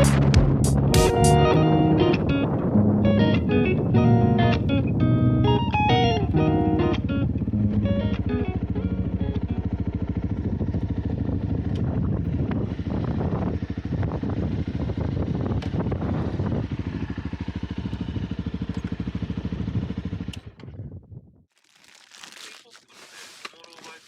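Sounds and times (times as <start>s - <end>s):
motorcycle engine running: 5.6s - 21.0s.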